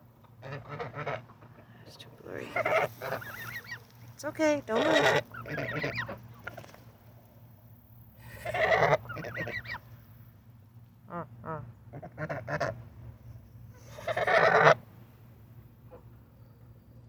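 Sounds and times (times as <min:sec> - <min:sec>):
geese honking: 0:00.2 - 0:01.7, 0:02.3 - 0:04.0, 0:04.6 - 0:06.7, 0:08.2 - 0:10.0, 0:11.1 - 0:12.8, 0:13.8 - 0:14.8.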